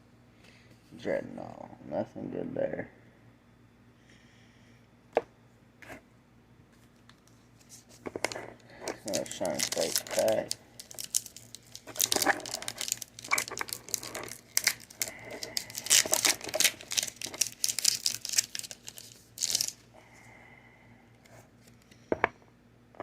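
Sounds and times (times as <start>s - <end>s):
foil wrapper crinkling and tearing: 8.9s - 19.8s.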